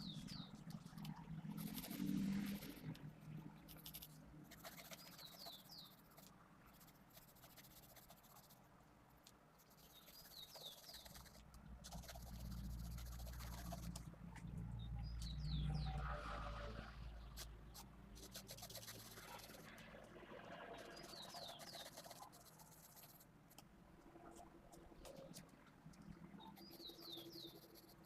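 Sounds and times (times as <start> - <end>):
pencil scratching on paper: 3.7 - 8.6, 9.8 - 14.0, 17.4 - 19.8, 20.8 - 23.6, 26.6 - 28.0
low hum: 11.3 - 18.2.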